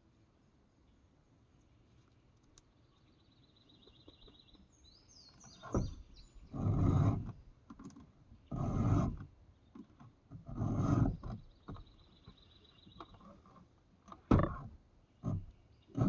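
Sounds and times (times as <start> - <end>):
birds chirping: 0.8 - 7.5, 11.1 - 16.0.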